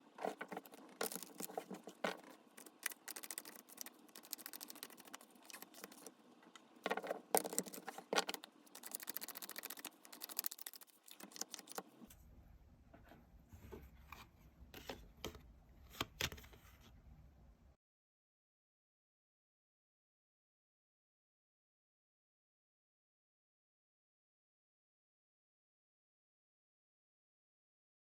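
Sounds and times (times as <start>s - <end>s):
cards being shuffled: 0.2s - 6.1s, 6.9s - 11.9s.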